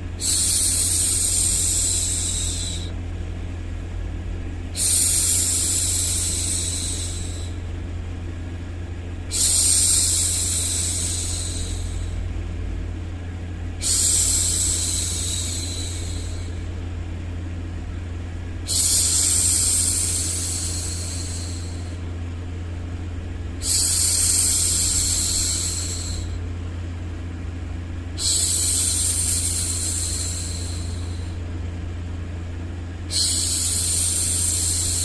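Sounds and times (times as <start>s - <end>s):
steady low hum: 0.0s - 35.0s
woman shushing: 0.2s - 2.9s, 4.8s - 7.6s, 9.3s - 12.2s, 13.8s - 16.6s, 18.7s - 22.0s, 23.6s - 26.4s, 28.2s - 31.4s, 33.1s - 35.0s.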